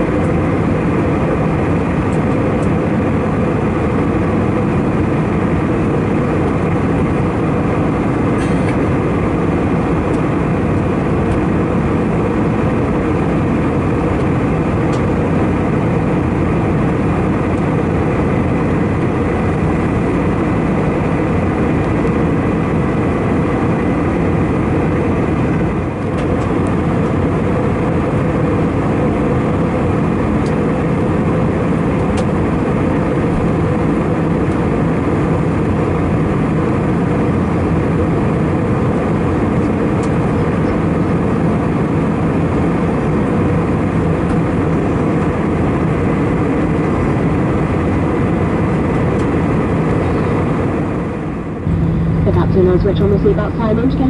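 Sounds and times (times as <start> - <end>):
faint steady whine: 0.0 - 54.0
jet engine hum: 0.0 - 54.0
air rushing past fuselage: 51.4 - 53.4.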